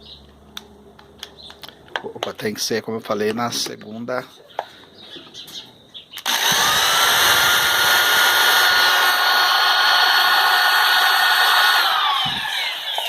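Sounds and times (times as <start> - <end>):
electric drill motor whine: 6.2 - 13.0.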